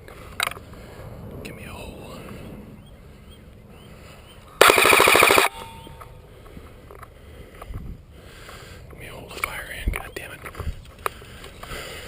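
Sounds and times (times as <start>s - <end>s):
airsoft gun full-auto burst: 4.6s - 5.5s.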